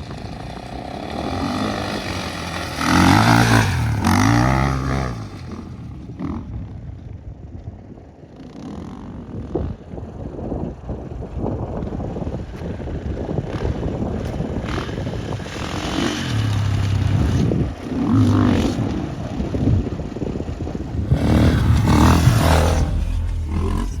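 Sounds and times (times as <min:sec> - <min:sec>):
off-road vehicle engine revving: 0:00.0 - 0:06.5, 0:13.4 - 0:24.0
rough driving rumble: 0:13.0 - 0:24.0.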